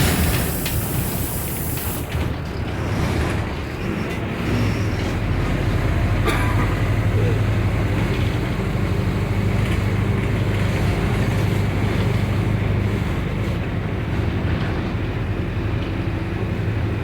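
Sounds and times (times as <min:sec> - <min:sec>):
bus engine and road noise: 0:00.0 - 0:17.0.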